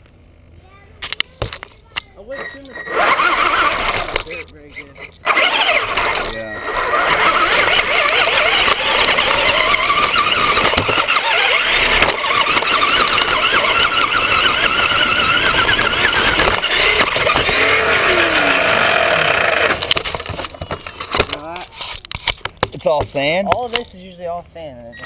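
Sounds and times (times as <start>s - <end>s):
rc car motor whining: 2.2s - 22.1s.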